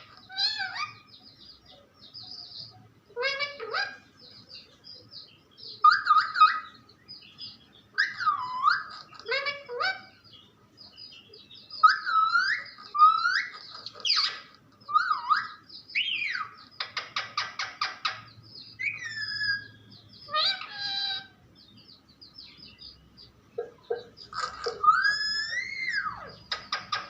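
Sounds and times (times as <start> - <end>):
parrot whistles and chirps: 5.8 - 6.7, 8.0 - 9.0, 11.8 - 16.6, 18.8 - 21.3, 24.0 - 27.0.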